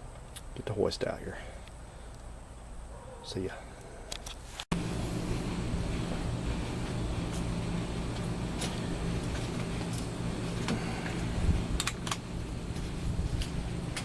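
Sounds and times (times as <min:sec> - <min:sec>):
low mechanical hum: 0:03.6 - 0:14.0.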